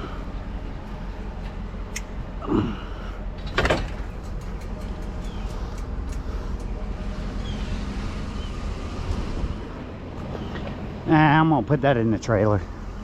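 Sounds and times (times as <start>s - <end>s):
vehicle idling hum: 0.0s - 13.0s
loud clunk: 3.4s - 4.4s.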